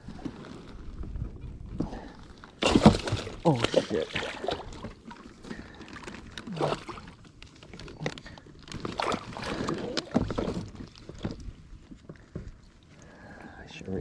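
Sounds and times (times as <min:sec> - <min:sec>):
fishing gear clicking and knocking: 0:01.8 - 0:12.6.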